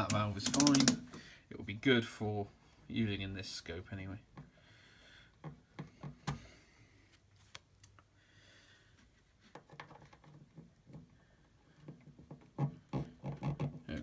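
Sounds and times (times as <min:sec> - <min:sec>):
faint clicks and knocks: 0:00.0 - 0:01.2.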